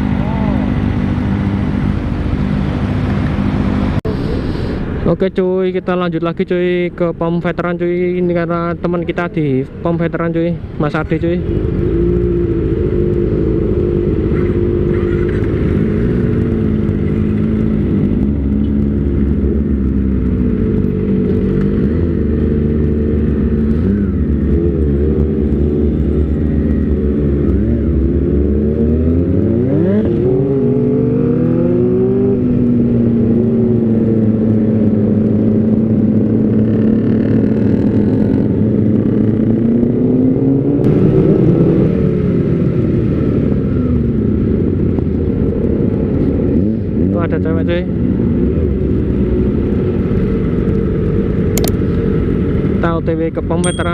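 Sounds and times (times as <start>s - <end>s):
motorcycle engine revving: 11.4s - 52.8s.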